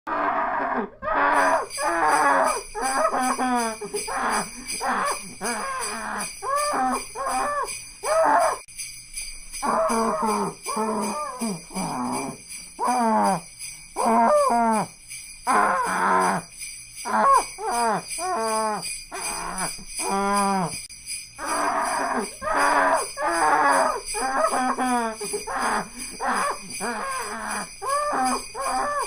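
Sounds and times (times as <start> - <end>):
muffled person screaming: 0.1 - 8.6, 21.4 - 29.0
sleigh bells jingling: 1.4 - 29.0.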